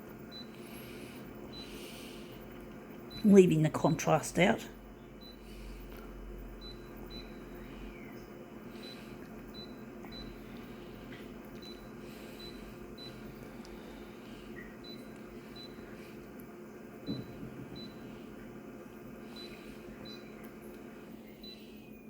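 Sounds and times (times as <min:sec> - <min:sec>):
photocopier humming: 0:00.0 - 0:22.0
knock: 0:17.1 - 0:17.7.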